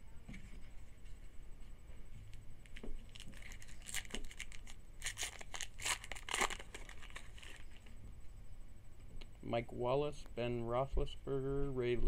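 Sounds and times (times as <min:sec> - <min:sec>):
wrapper tearing and crinkling: 0:02.6 - 0:07.9.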